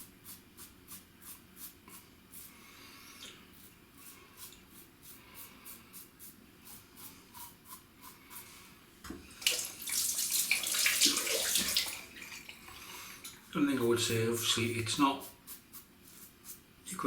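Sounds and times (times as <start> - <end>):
tap water running into sink: 9.1 - 12.7.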